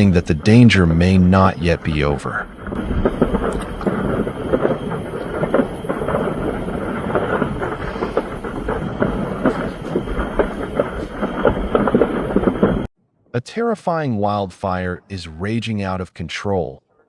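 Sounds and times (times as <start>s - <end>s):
large fire crackling and popping: 0.0s - 12.9s.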